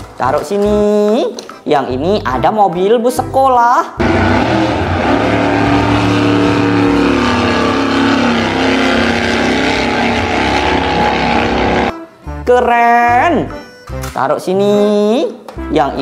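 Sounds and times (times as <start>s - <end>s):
engine-like mechanical running: 4.0s - 11.9s.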